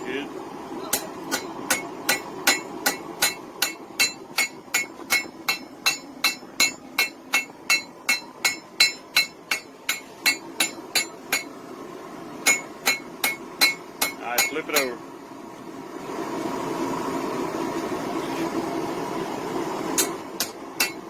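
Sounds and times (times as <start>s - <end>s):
hammer striking metal on anvil: 0.9s - 11.5s, 12.4s - 14.9s, 20.0s - 21.0s.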